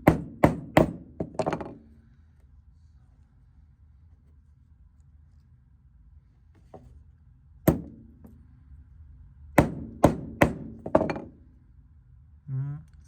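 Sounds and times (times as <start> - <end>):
hammer striking metal: 9.6 - 11.3.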